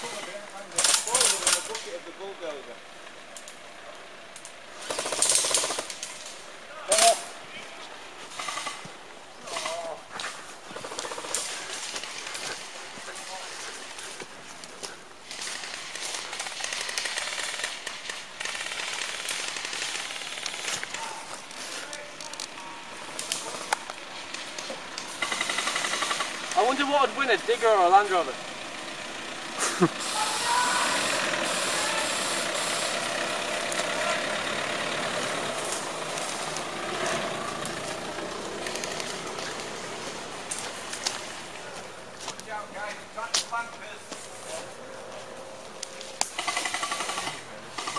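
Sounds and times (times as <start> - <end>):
airsoft rifles firing full auto: 0.8 - 1.8, 4.9 - 6.0, 15.4 - 21.0, 25.2 - 26.4, 46.3 - 47.9
heavy vehicle engine running: 7.4 - 43.2, 43.8 - 47.9.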